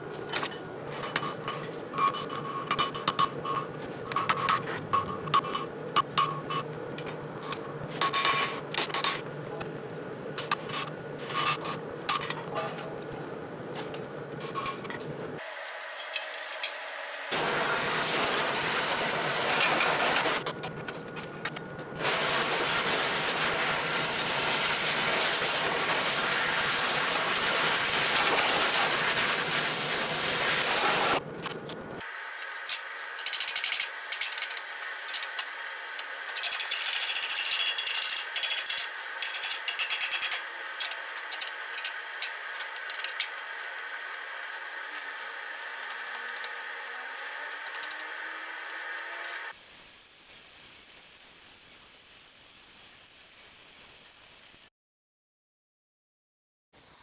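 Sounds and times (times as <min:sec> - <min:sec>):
steady hiss: 0:17.3 - 0:20.4, 0:48.7 - 0:54.7.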